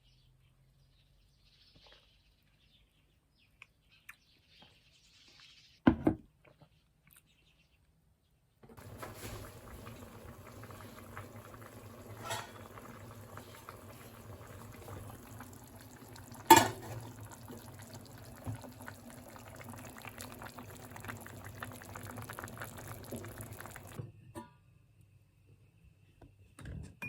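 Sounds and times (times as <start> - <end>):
liquid bubbling and fizzing: 8.8 - 24.0.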